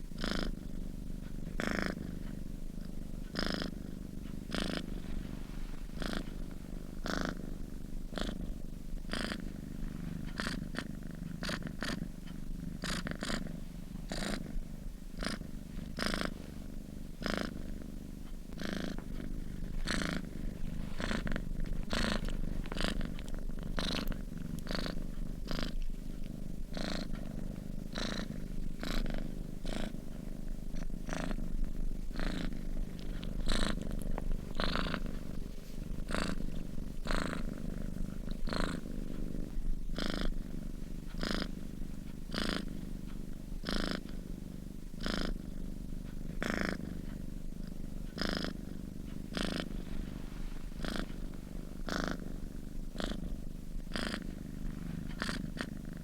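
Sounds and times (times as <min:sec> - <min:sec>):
cat purring: 0:00.0 - 0:56.0.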